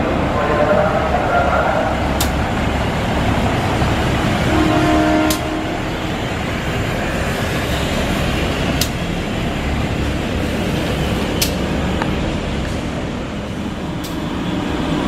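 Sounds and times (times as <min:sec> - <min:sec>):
train rumble: 0:00.0 - 0:15.0
sharp clicks: 0:11.4 - 0:11.7.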